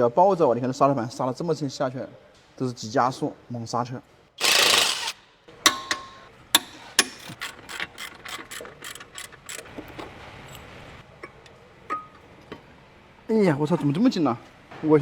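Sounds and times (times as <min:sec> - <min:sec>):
ratchet wrench clicking: 0:04.4 - 0:10.7.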